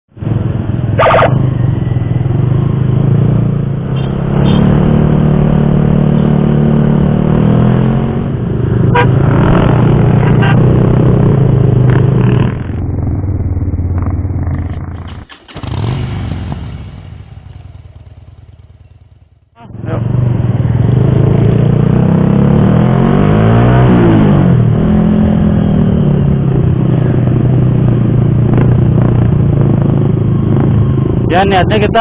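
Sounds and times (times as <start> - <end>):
motorcycle engine running: 0.2 - 22.5
rush of noise: 3.4 - 20.8.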